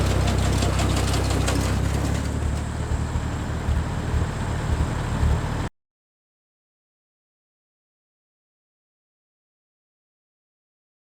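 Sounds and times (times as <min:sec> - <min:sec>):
clattering: 0:00.0 - 0:02.7
tractor engine running: 0:00.0 - 0:05.7.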